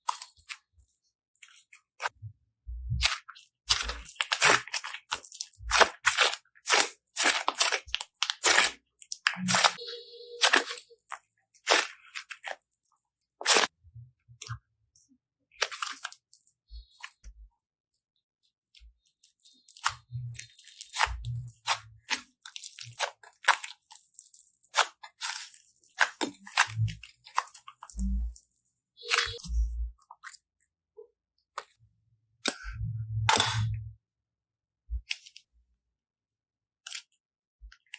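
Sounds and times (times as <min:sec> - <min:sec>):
slime crackling and popping: 0:03.0 - 0:13.7, 0:19.2 - 0:29.7.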